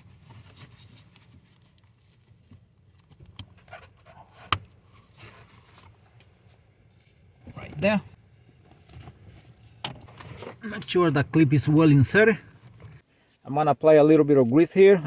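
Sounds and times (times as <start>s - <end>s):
handling and rustling: 0.0s - 11.6s.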